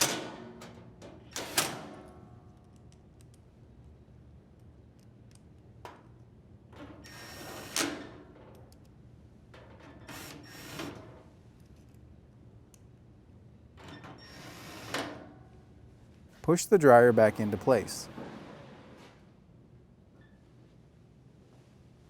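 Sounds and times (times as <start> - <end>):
small click: 2.5 - 3.4, 12.7 - 12.9.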